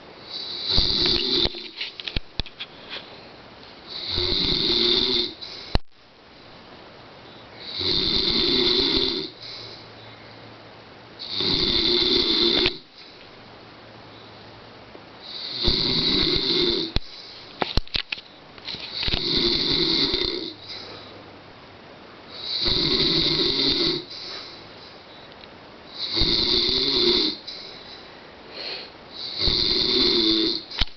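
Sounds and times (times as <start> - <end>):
man snoring loudly: 0.3 - 1.7, 3.9 - 5.5, 7.6 - 9.5, 11.2 - 12.9, 15.2 - 17.0, 19.2 - 20.8, 22.4 - 24.2, 25.9 - 27.6, 29.1 - 30.8.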